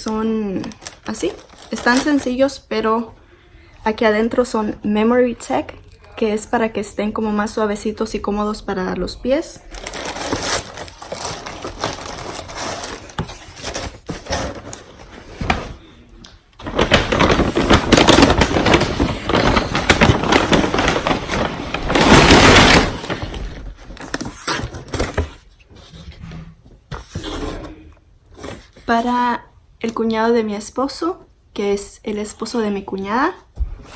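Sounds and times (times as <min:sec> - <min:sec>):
packaging rustling and crinkling: 0:00.0 - 0:02.5, 0:09.6 - 0:15.8, 0:16.6 - 0:25.6.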